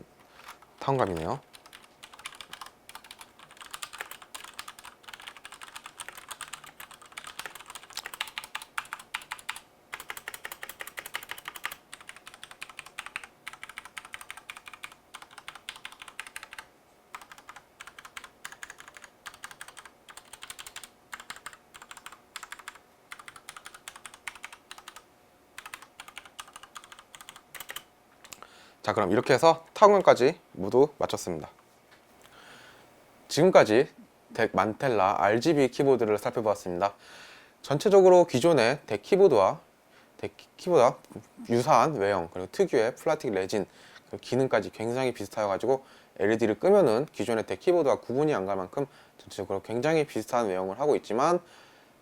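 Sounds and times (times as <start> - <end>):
fast mechanical keyboard typing: 0.4 - 25.0, 25.6 - 28.4.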